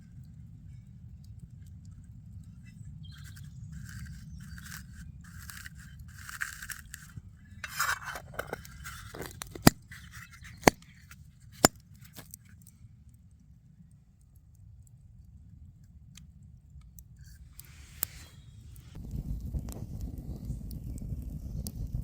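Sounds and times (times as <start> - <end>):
short scraping strokes: 3.1 - 11.8, 17.3 - 19.0.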